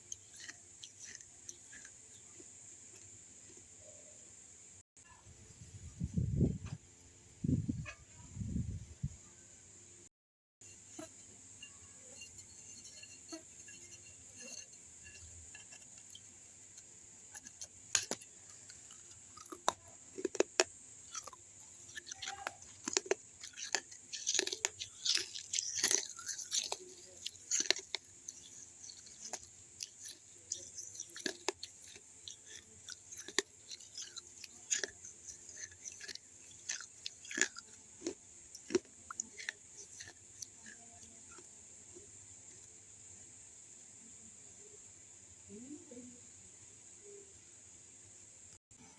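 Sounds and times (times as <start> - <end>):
person crunching clay cup: 0.0 - 3.6, 11.0 - 41.5.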